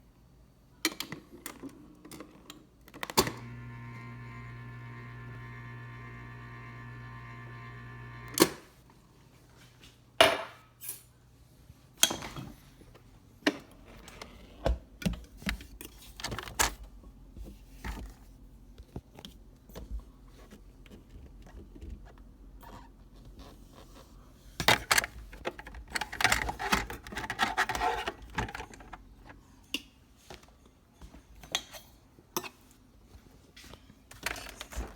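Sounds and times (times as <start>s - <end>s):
ice dispenser motor humming: 3.2s - 8.6s
ice and plastic rattling: 24.6s - 29.1s.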